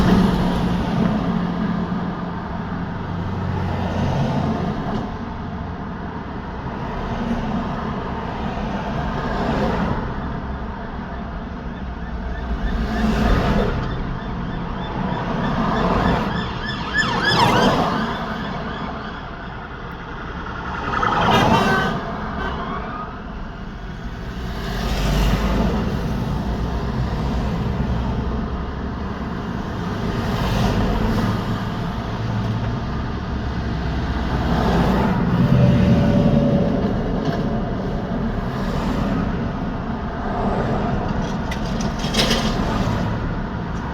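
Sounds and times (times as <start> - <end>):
traffic rushing: 0.0 - 43.9
vehicles passing close by: 0.0 - 43.9.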